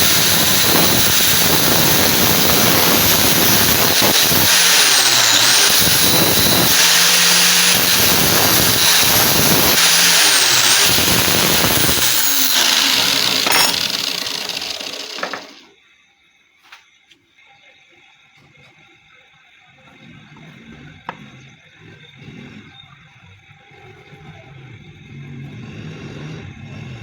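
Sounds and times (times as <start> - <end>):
power tool whirring and grinding: 0.0 - 15.7.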